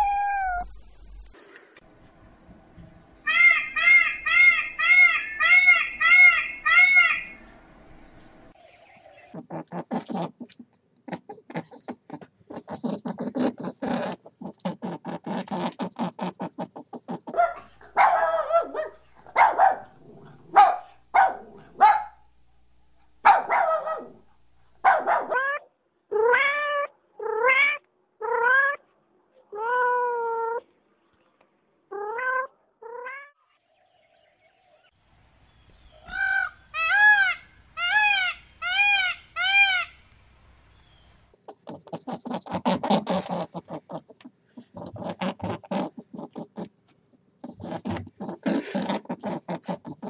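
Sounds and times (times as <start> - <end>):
cat meowing: 0.0 - 0.7, 25.4 - 28.8.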